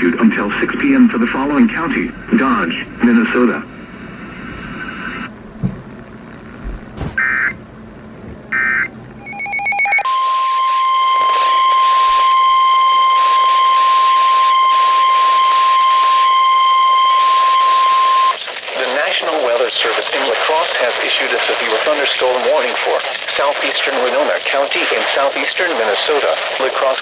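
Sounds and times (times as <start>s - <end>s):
steady warning alarm tone: 8.5s - 18.4s
digital header data tones: 9.2s - 18.4s.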